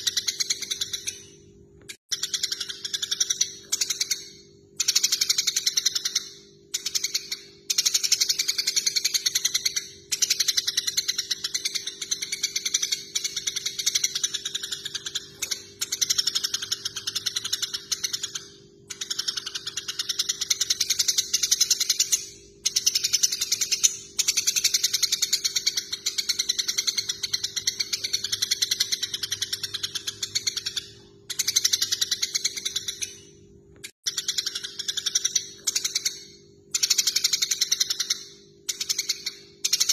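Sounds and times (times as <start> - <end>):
sparrows chattering: 0.0 - 1.3, 6.8 - 33.4.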